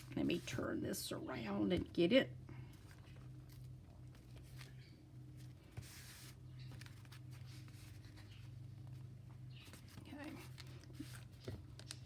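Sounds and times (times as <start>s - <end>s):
steady low hum: 0.0s - 12.0s
paper rustling: 5.4s - 9.0s, 9.6s - 12.0s.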